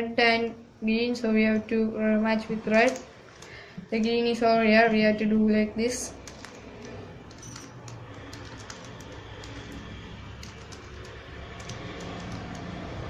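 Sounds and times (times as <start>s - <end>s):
puzzle cube twisting clicks: 6.2s - 13.0s.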